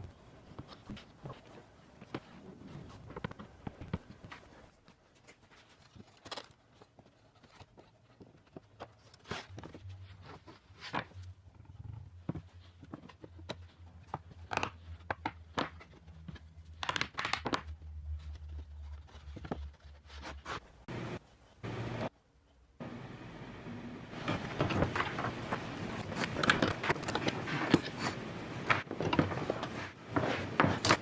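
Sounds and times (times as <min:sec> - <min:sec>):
low steady hum: 0:20.9 - 0:22.1, 0:22.8 - 0:31.0
objects knocking and tapping: 0:24.2 - 0:31.0.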